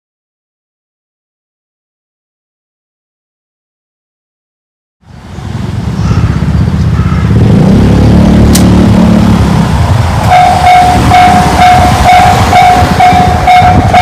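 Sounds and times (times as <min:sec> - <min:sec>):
level-crossing warning alarm: 0:09.7 - 0:14.0.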